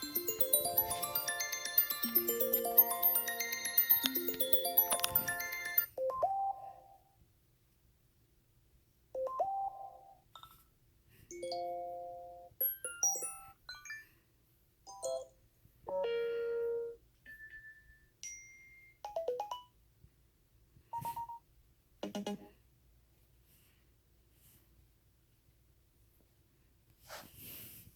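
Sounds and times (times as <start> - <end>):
phone alert tones: 0.0 - 7.0.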